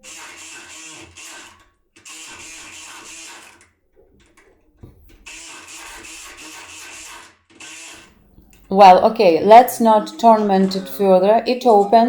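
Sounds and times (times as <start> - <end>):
electric pick gun buzzing: 0.0 - 3.6, 5.3 - 8.2.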